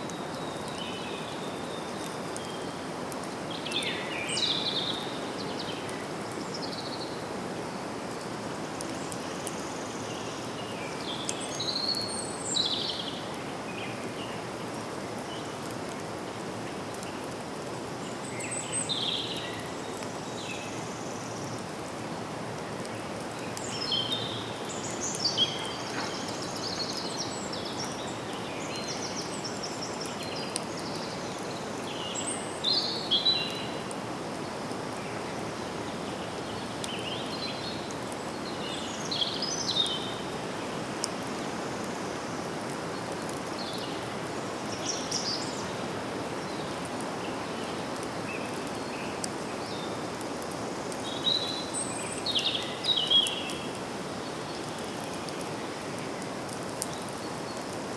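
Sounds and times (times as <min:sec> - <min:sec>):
wind in leaves: 0:00.0 - 0:57.9
birds singing: 0:22.9 - 0:33.9, 0:35.0 - 0:40.8, 0:42.9 - 0:50.0, 0:51.0 - 0:55.1.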